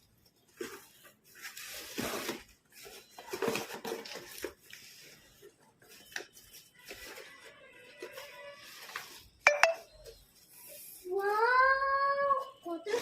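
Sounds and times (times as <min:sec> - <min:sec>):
packaging rustling and scraping: 0:00.1 - 0:09.4.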